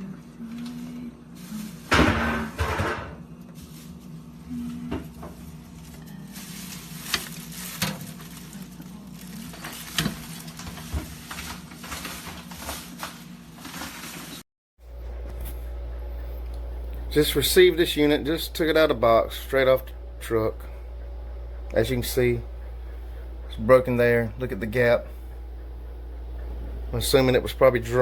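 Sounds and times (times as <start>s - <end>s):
steady low hum: 14.8s - 28.0s.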